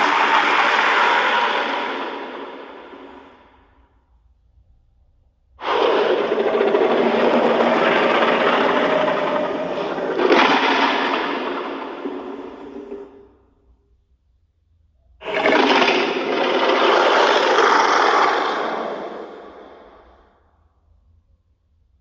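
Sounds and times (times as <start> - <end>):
monster roar: 0.0 - 3.6, 5.6 - 13.2, 15.2 - 20.2.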